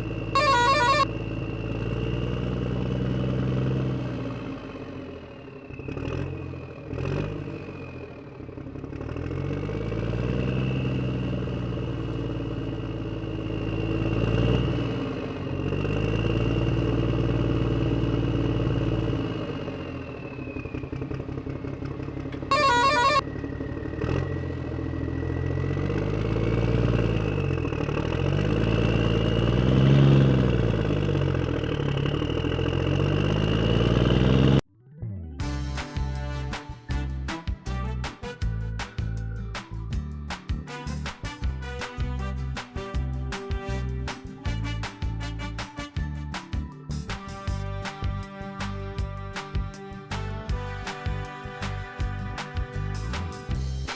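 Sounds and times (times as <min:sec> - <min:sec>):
heavy machine engine revving: 0:00.0 - 0:20.4, 0:22.5 - 0:34.6.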